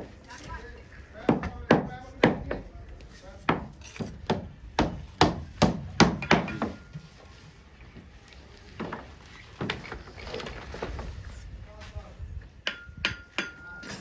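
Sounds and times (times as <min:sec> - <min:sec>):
hand tool striking brick: 0:03.5 - 0:06.9.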